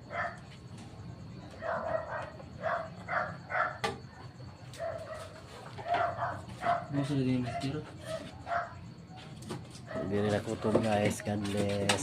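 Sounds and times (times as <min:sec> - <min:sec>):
dog barking: 0:00.0 - 0:00.5, 0:01.5 - 0:08.9, 0:09.8 - 0:10.4.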